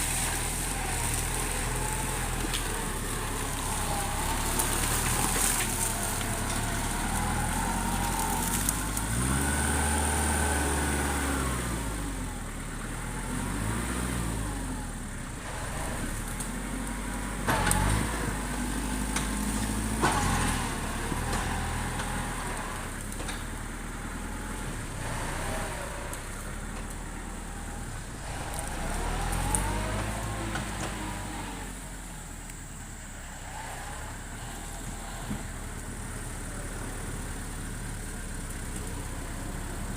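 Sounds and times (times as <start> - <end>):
tractor engine changing speed: 0.0 - 39.9.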